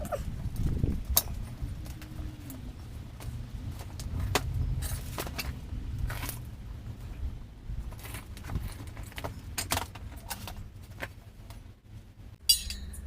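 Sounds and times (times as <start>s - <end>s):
metal tools clinking: 12.4s - 13.0s
ringing metallic clang: 12.4s - 13.0s.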